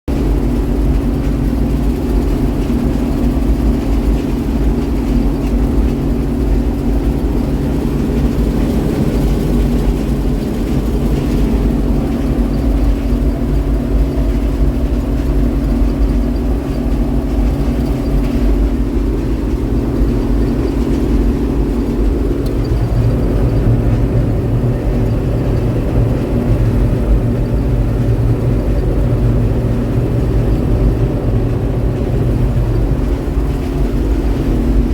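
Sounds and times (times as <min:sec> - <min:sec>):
farm machinery engine droning: 0:00.1 - 0:34.9.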